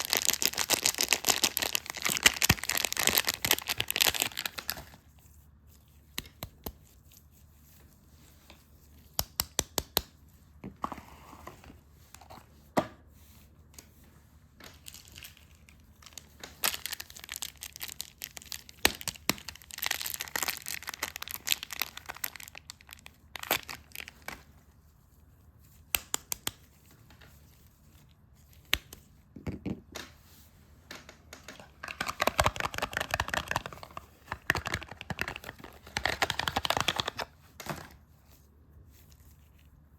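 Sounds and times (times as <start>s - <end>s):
wrapping torn and crinkled: 0.0s - 6.1s, 14.8s - 24.5s, 31.6s - 37.4s.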